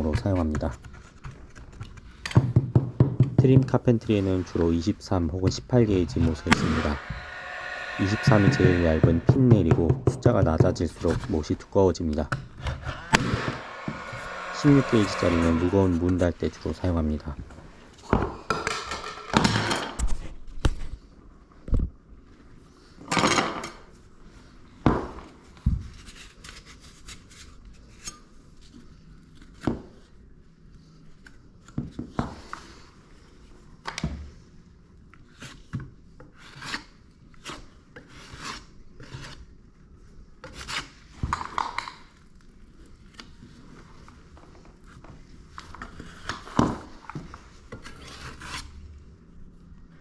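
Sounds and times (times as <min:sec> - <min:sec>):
rubbing and scraping on wood: 0:12.6 - 0:16.3.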